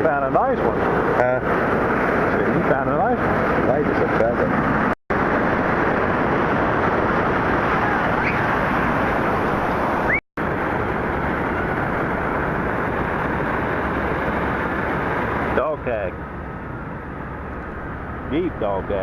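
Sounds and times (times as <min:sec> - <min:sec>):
heavy surf breaking: 0:00.0 - 0:16.1
wind on microphone: 0:00.4 - 0:15.6.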